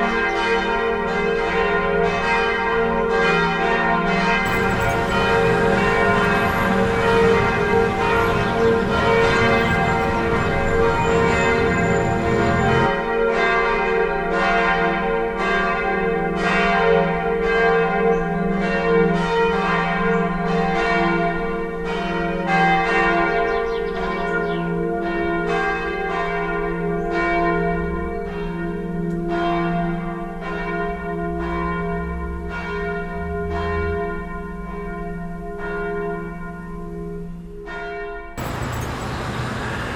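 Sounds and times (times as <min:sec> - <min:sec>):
church bell ringing: 0:00.2 - 0:39.9
traffic noise: 0:04.4 - 0:12.9, 0:38.4 - 0:39.9.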